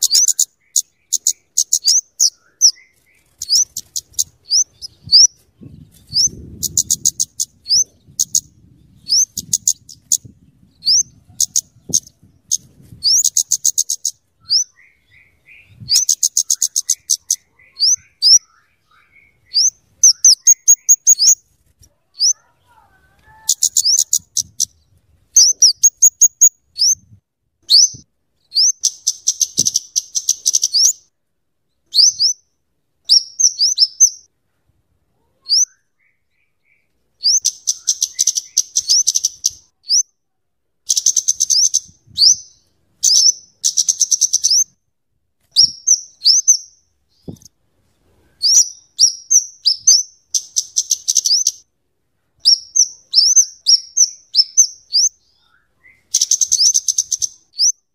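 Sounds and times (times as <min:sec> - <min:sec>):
bird chip notes and trills: 0:00.0 - 0:21.4, 0:35.5 - 0:40.1, 0:52.5 - 0:57.8.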